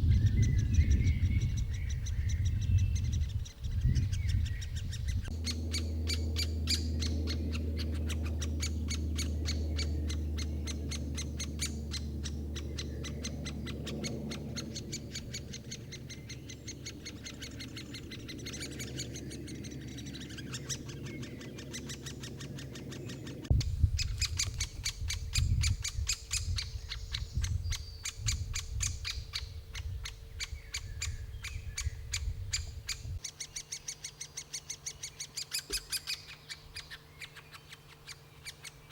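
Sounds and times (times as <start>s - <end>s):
low rumble: 0.0s - 28.8s
woodpecker ticking call: 0.4s - 38.9s.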